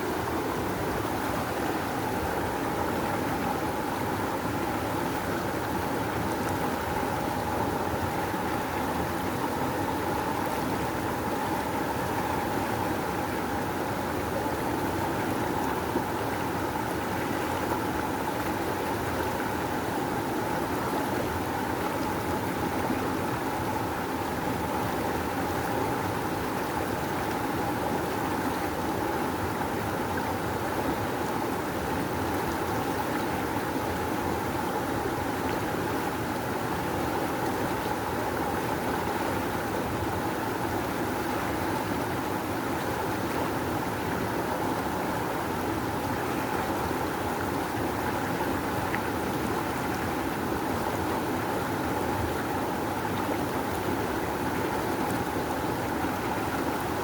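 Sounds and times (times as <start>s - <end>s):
river water rushing: 24.5s - 57.0s.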